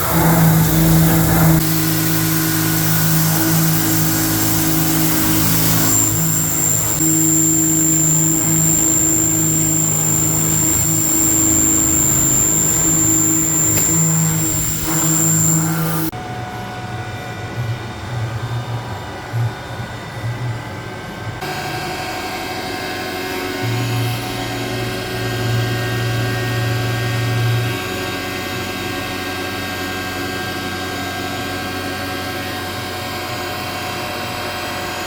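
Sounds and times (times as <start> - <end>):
machine hum: 0.0 - 16.1
milling machine spindle whine: 0.0 - 16.1
uneven metal cutting sound: 0.0 - 16.1.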